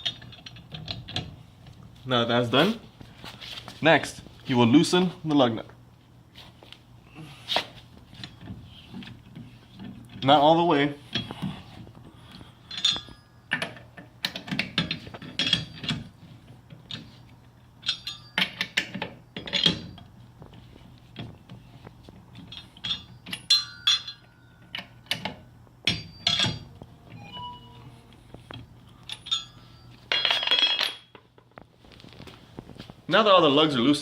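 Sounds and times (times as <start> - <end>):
tire iron clinking on lug nuts: 12.6 - 16.2, 17.8 - 20.2, 22.4 - 26.8, 29.0 - 31.4.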